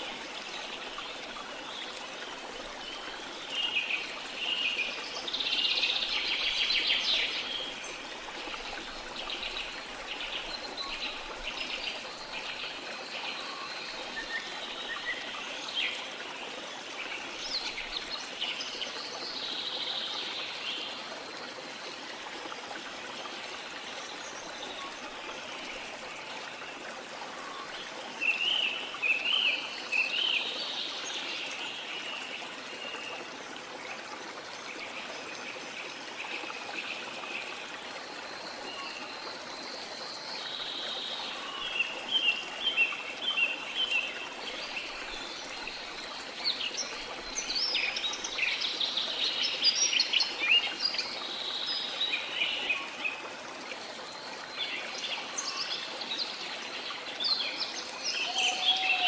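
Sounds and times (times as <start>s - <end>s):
water flowing: 0.0s - 59.0s
birds singing: 57.2s - 59.0s.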